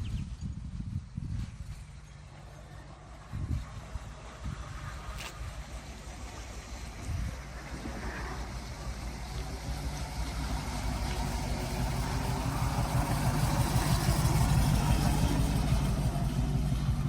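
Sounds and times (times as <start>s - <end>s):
truck engine running: 1.6s - 17.0s.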